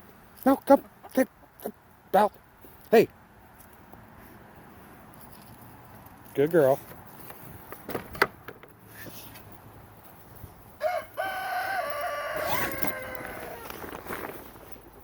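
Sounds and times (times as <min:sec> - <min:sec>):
rooster crowing: 0:10.8 - 0:13.9.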